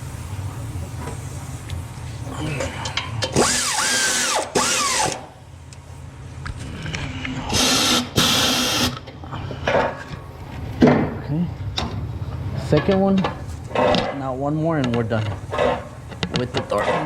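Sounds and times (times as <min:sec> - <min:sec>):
pneumatic air ratchet running: 0:02.8 - 0:05.3, 0:07.5 - 0:09.0.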